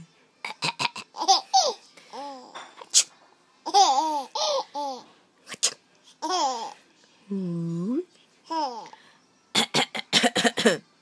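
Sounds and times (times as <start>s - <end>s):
baby laughing: 0.4s - 2.5s, 3.6s - 5.0s, 6.2s - 6.8s
adult coughing: 9.6s - 10.8s.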